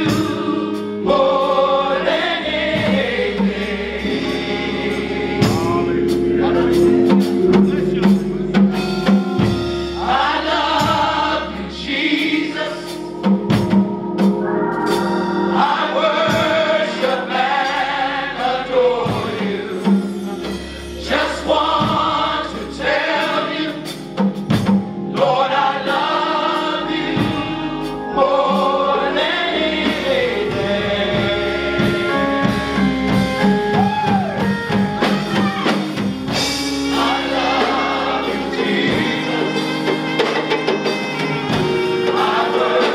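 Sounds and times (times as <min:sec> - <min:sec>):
bass line: 0:00.0 - 0:42.8
band accompaniment: 0:00.0 - 0:42.9
gospel choir singing: 0:00.0 - 0:42.9
drum hits: 0:05.3 - 0:11.3, 0:12.2 - 0:17.8.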